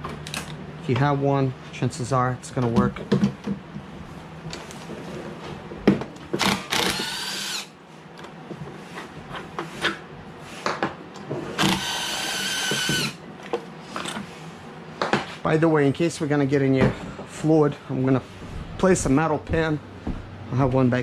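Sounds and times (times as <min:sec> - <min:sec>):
power drill whining: 0:06.4 - 0:07.7, 0:11.6 - 0:13.2.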